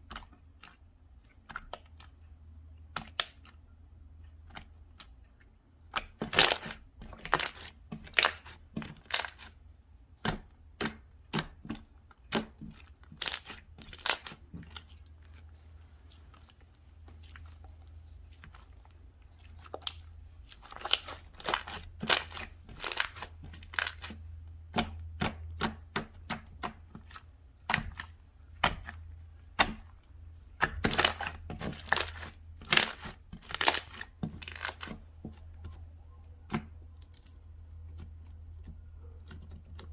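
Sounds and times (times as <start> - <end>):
slime crackling and popping: 19.5 - 24.2, 30.6 - 35.0.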